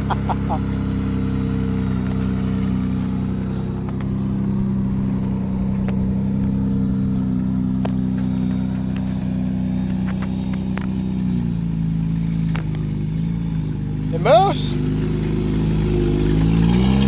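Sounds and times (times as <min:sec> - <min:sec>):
buggy engine idling: 0:00.0 - 0:17.0
person talking: 0:14.1 - 0:14.8.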